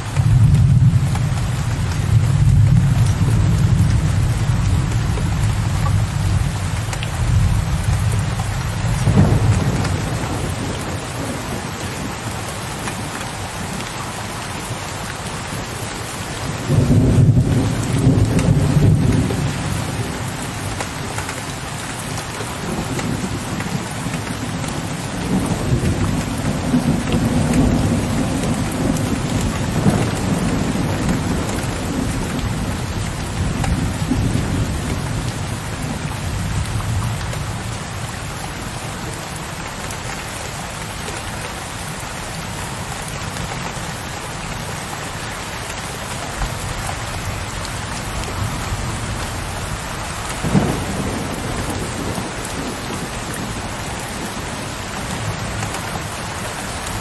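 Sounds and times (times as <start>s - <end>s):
steady rain: 0.0s - 57.0s
distant thunder rumbling: 7.3s - 11.9s, 16.7s - 20.4s, 22.6s - 37.1s, 46.4s - 55.8s.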